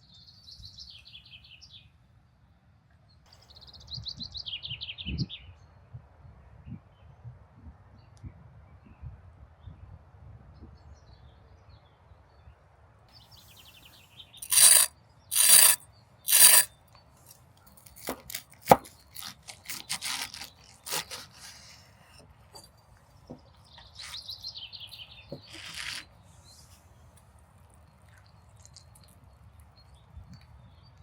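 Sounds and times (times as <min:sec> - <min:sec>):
knife cutting crunchy crust: 0:14.4 - 0:16.7, 0:17.7 - 0:22.8, 0:23.8 - 0:24.3, 0:25.4 - 0:26.1.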